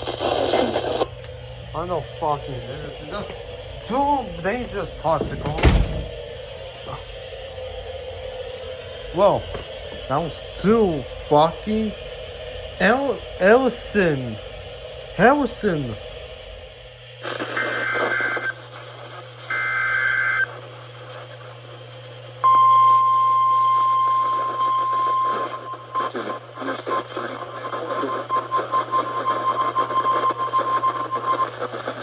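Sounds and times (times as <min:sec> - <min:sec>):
radio static: 0:00.0 - 0:06.1, 0:09.0 - 0:16.6, 0:17.2 - 0:19.6, 0:25.3 - 0:29.3
steady warning alarm tone: 0:01.0 - 0:16.9, 0:22.4 - 0:26.4, 0:28.2 - 0:31.7.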